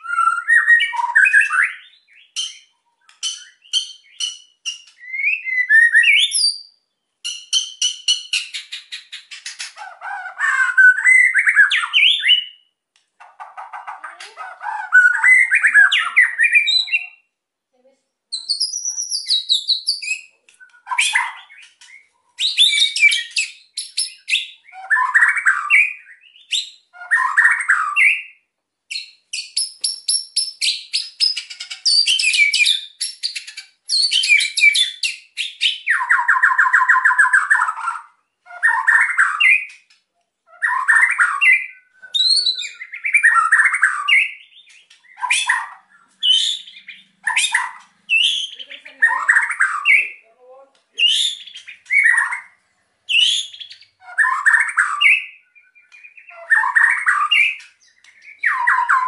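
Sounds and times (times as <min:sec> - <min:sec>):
bird whistling song: 0:00.0 - 0:17.3, 0:18.3 - 0:50.2, 0:51.0 - 0:59.0.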